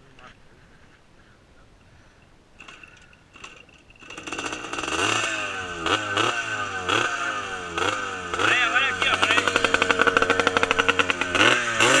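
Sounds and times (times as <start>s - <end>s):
motorcycle engine revving: 2.6s - 12.0s.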